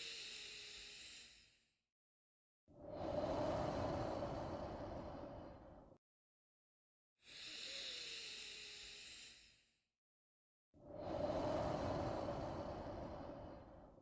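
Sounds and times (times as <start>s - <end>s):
person breathing slowly: 2.8s - 6.0s, 7.2s - 9.6s, 10.8s - 14.0s.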